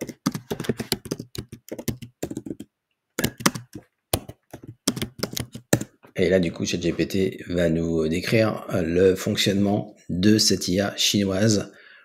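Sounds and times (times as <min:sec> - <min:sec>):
typing on computer keyboard: 0:00.0 - 0:06.0.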